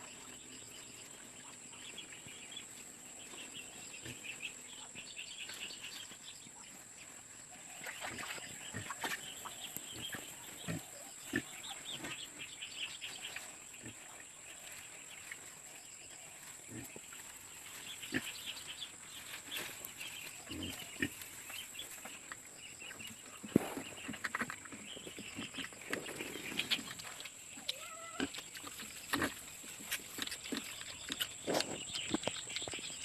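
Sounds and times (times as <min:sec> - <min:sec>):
pigs grunting and squealing: 0:27.6 - 0:29.4.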